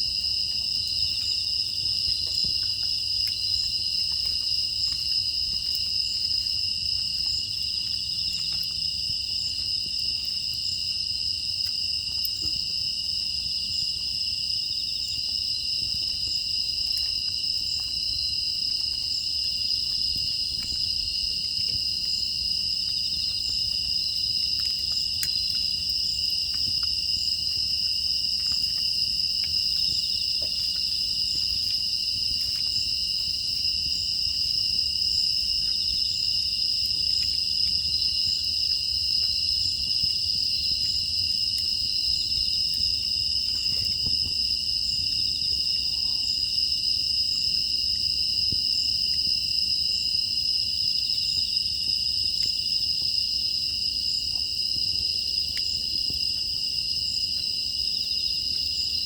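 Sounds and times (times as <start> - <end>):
crickets chirring: 0.0 - 59.0
faint ticks: 16.0 - 34.0.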